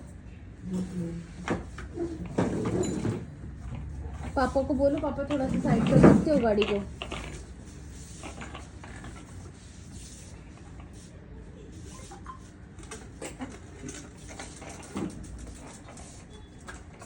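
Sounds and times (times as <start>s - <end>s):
bicycle clicking and creaking: 3.6s - 9.5s, 12.8s - 17.0s.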